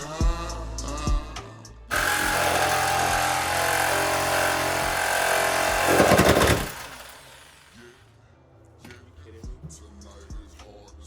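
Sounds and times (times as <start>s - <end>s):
rapid hammering burst: 1.9s - 8.0s
power tool running: 1.9s - 8.1s.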